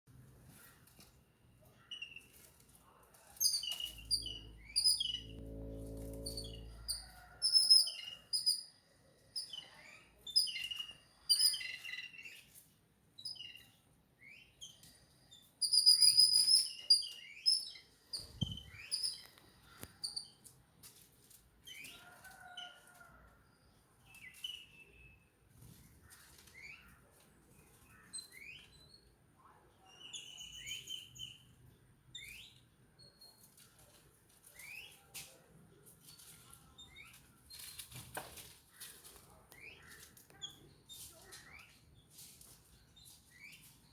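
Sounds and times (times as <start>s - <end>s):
low hum: 3.7s - 7.6s.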